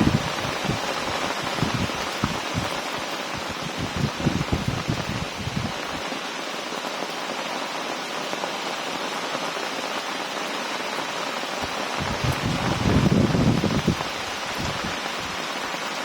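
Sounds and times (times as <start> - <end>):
wind buffeting microphone: 0.0 - 6.1, 11.6 - 15.5
heavy rain falling: 0.0 - 16.0.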